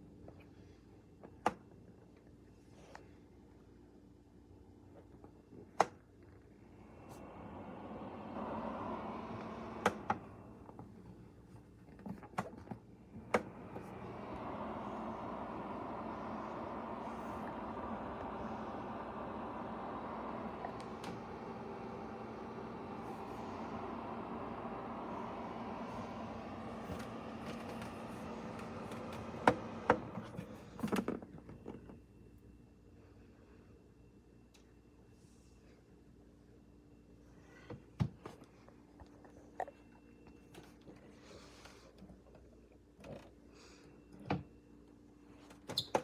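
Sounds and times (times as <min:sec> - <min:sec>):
heater fan blowing air: 0:06.7 - 0:11.3, 0:13.0 - 0:31.1.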